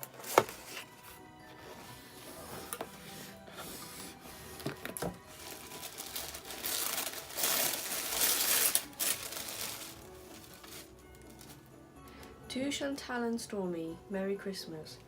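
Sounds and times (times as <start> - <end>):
paper rustling and tearing: 0.0 - 1.2, 1.8 - 11.6.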